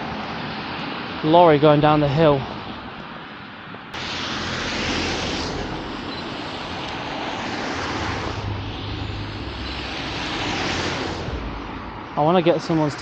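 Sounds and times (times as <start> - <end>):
low engine hum: 4.0 - 13.0
tyres hissing on road: 4.0 - 13.0.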